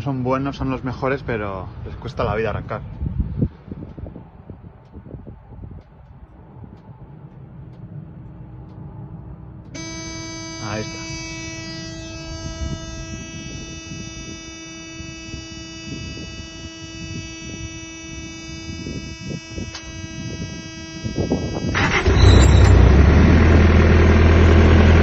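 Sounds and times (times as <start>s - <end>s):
electronic alarm tone: 9.8s - 22.9s
diesel engine cranking and running: 21.6s - 25.0s.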